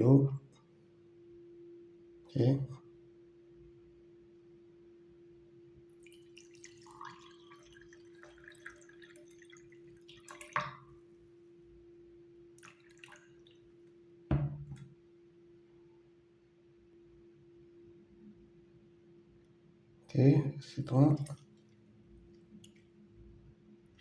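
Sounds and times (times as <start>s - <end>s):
sharp knock: 14.3s - 14.9s
thump on counter: 14.3s - 14.9s.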